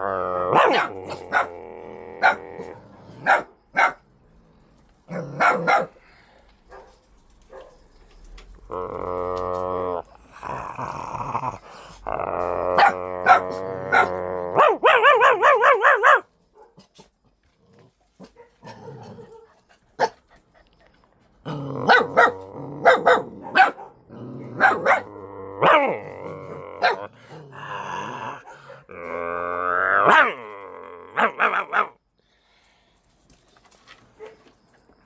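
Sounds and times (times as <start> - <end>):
person growling and barking: 0.0 - 3.5, 5.1 - 6.0, 8.6 - 16.2, 17.8 - 19.4, 21.4 - 32.0.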